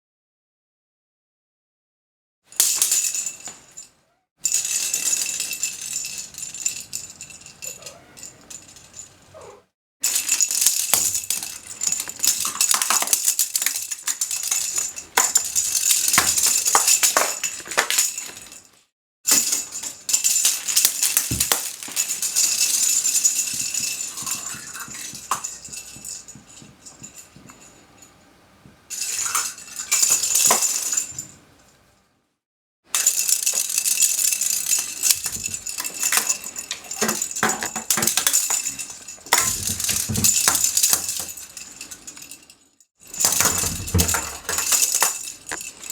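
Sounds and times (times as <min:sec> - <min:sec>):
cat toy ball rattling: 0:04.5 - 0:18.5, 0:19.6 - 0:31.2, 0:33.0 - 0:42.1, 0:43.1 - 0:45.9.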